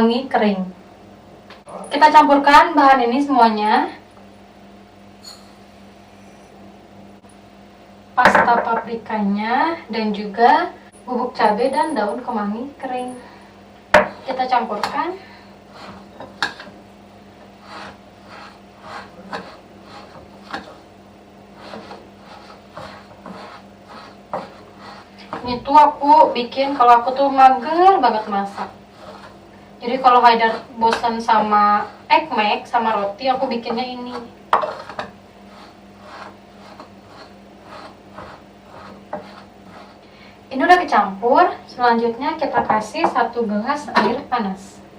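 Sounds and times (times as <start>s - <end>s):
faint steady hum: 0.0s - 44.9s
spoon scraping grain in bowl: 15.7s - 16.7s, 17.6s - 20.9s, 21.5s - 40.0s.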